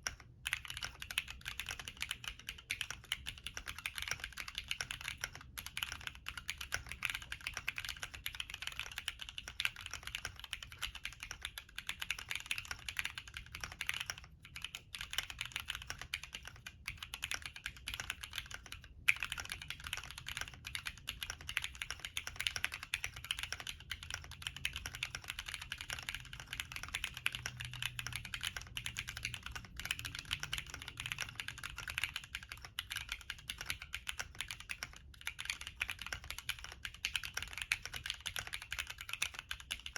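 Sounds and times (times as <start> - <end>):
fast mechanical keyboard typing: 0.0 - 39.9.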